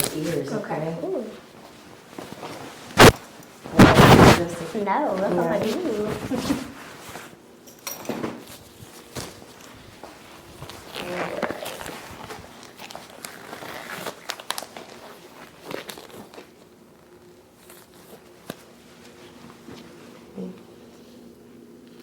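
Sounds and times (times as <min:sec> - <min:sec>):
handling rustling: 0:03.7 - 0:07.3.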